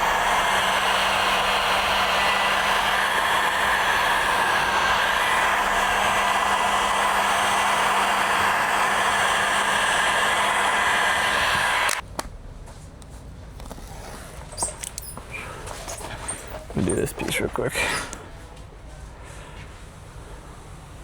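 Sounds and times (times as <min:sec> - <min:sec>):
heat gun blowing hot air: 0:00.0 - 0:12.0.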